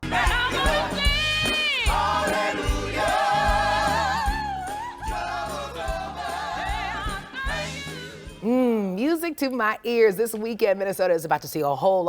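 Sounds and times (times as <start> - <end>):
band with steady bass beat: 0.0 - 6.3
person singing gospel: 0.0 - 8.8.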